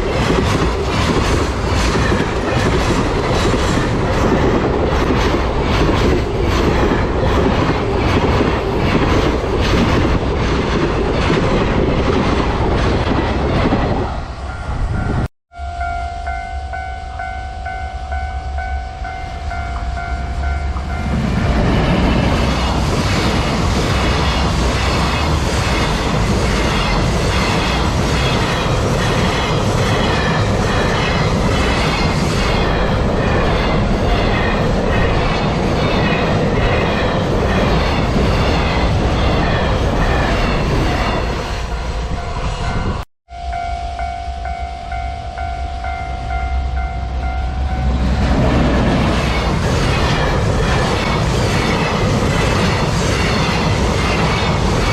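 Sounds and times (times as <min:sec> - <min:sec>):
train wheels clattering over rails: 0:00.0 - 0:14.0, 0:20.7 - 0:41.5, 0:47.8 - 0:54.9
level-crossing warning bell: 0:14.3 - 0:21.6, 0:40.0 - 0:50.1.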